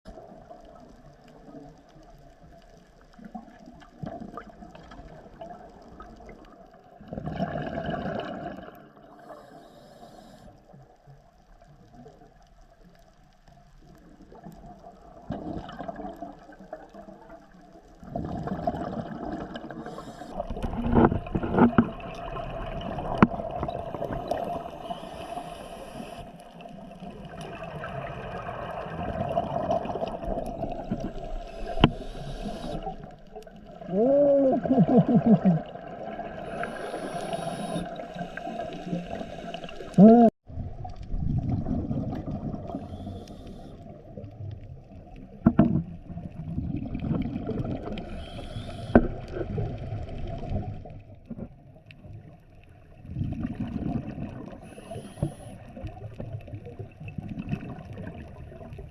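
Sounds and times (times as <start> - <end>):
underwater bubbles gurgling: 0.1 - 58.9
low hiss: 24.0 - 27.0, 30.2 - 40.0, 42.7 - 44.0.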